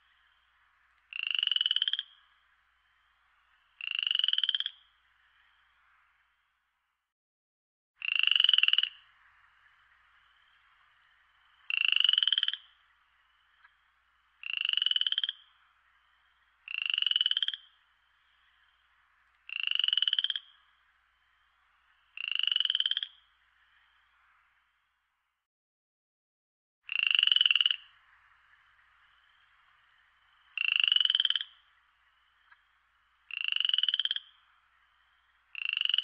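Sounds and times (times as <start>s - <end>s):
faint steady background hum: 0.0s - 7.1s, 8.0s - 25.4s, 27.2s - 36.0s
frog calling in rapid pulses: 1.1s - 2.2s, 3.8s - 4.9s, 8.0s - 9.0s, 11.7s - 13.8s, 14.4s - 17.8s, 19.5s - 20.6s, 22.2s - 23.3s, 26.9s - 27.9s, 30.4s - 34.5s, 35.2s - 36.0s.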